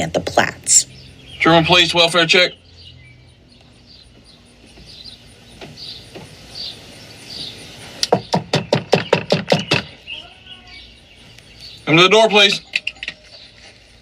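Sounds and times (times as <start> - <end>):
rapid knocking on a door: 8.1 - 10.0.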